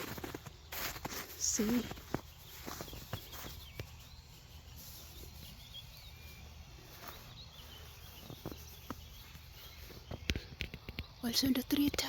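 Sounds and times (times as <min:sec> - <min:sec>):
birds chirping faintly: 0:00.0 - 0:12.0
long steady bird whistle: 0:01.6 - 0:11.0.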